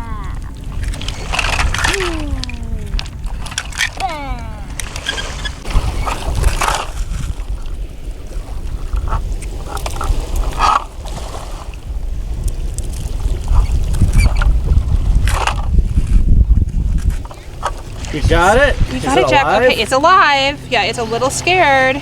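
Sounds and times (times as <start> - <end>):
wind rumbling on microphone: 0.0 - 22.0.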